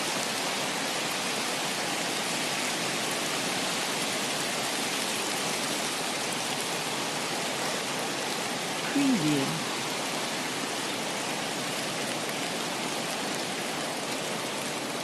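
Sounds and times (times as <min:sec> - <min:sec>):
rain hiss: 0:00.0 - 0:15.0
running water: 0:00.0 - 0:15.0.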